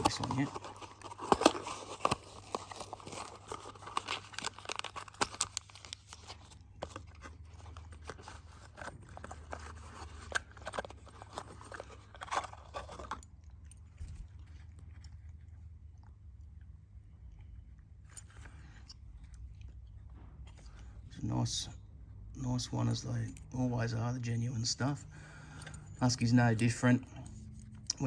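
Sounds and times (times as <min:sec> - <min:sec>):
packaging crinkling and tearing: 0:00.0 - 0:13.3.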